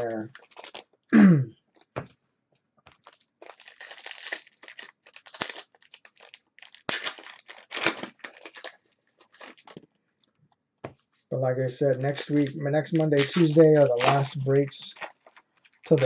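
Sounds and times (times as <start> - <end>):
card pack wrappers crinkling and tearing: 0.0 - 1.0, 2.9 - 9.9, 11.7 - 16.0.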